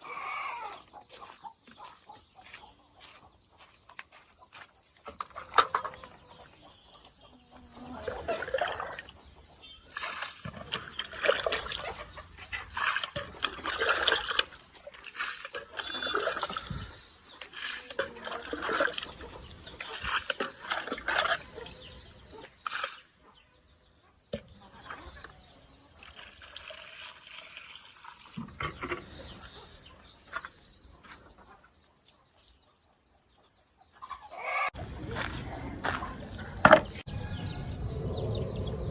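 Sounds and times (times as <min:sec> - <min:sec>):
chickens clucking: 0:00.0 - 0:26.2, 0:28.5 - 0:37.1
water splashing and pouring: 0:08.1 - 0:09.2, 0:09.8 - 0:21.6, 0:22.6 - 0:23.1, 0:26.0 - 0:28.9.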